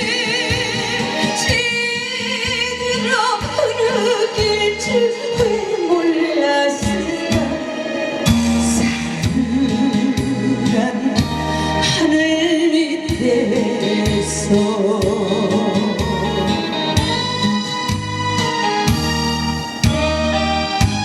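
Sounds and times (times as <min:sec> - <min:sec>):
ballad melody with vibrato: 0:00.0 - 0:21.0
steady bass beat: 0:08.3 - 0:11.9, 0:13.2 - 0:21.0.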